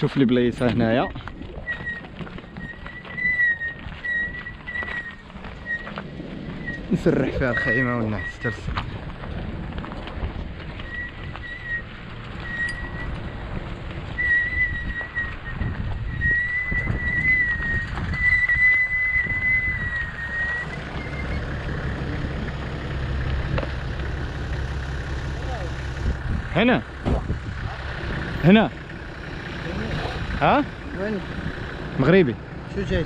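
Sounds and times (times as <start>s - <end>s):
low rumble: 0.0s - 33.0s
high whistling note: 12.4s - 13.1s.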